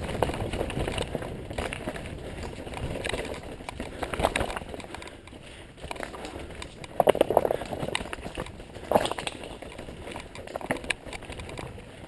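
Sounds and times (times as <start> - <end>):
rolling tyre noise on dirt: 0.0 - 12.0.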